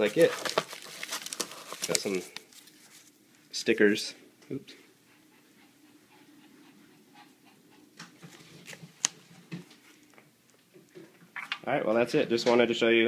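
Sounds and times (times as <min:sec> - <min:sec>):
soft rustles: 0:00.0 - 0:03.5.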